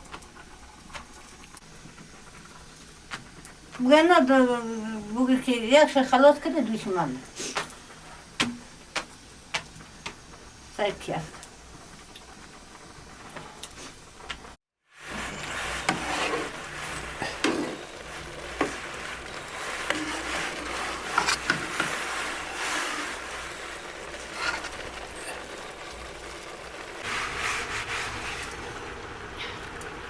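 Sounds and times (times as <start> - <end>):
food scraping and rubbing: 15.0 - 29.0.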